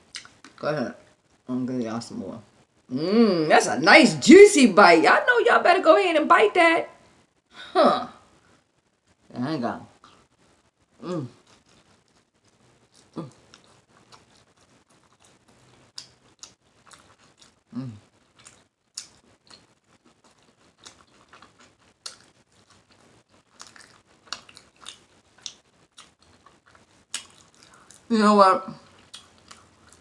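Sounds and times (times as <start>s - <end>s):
open-mouthed chewing smacking: 0.1s - 0.6s, 10.0s - 10.4s, 11.0s - 28.1s, 28.8s - 30.0s.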